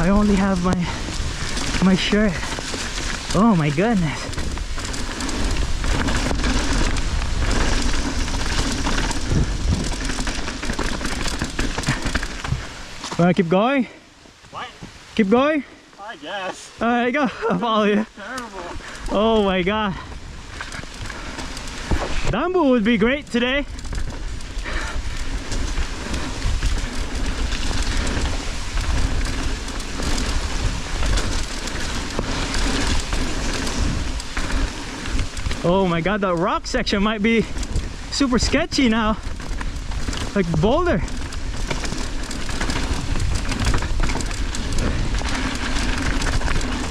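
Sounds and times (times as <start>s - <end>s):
wind on microphone: 0.0s - 12.8s
heavy rain falling: 0.0s - 13.4s, 15.9s - 46.9s
bike rattling and knocking: 0.0s - 14.0s, 16.8s - 46.9s
bike tyres hissing on wet trail: 0.0s - 46.9s.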